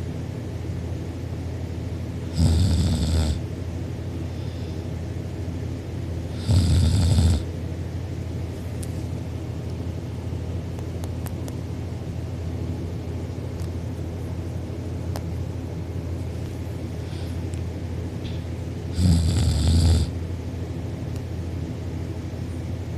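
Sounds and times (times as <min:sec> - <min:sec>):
steady low hum: 0:00.0 - 0:22.9
person snoring: 0:02.3 - 0:03.4, 0:06.3 - 0:07.5, 0:18.9 - 0:20.2.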